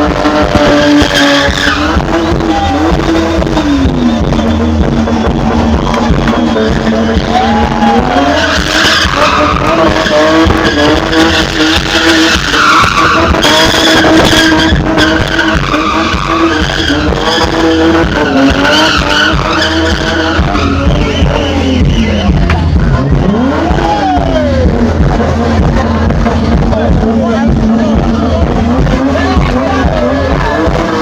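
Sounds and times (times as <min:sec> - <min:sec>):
car engine at high revs: 0:00.0 - 0:31.0
tyres squealing: 0:05.4 - 0:22.5.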